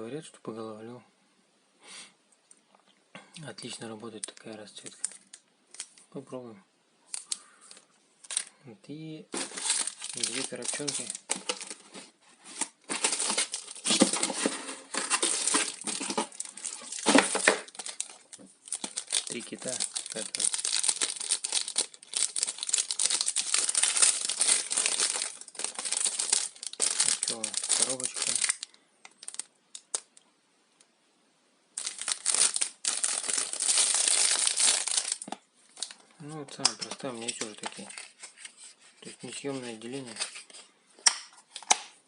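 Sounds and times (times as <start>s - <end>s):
plastic packaging crinkling: 4.2s - 6.1s, 7.1s - 8.5s, 9.3s - 30.2s, 31.8s - 38.7s.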